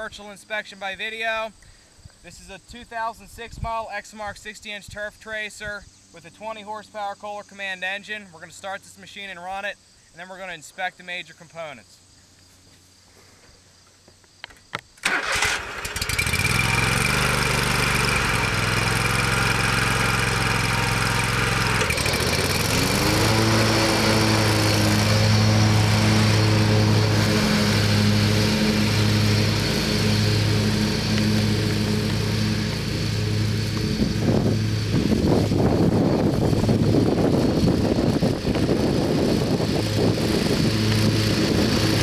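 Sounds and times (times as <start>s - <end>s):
mower engine starting and running: 15.0s - 42.0s.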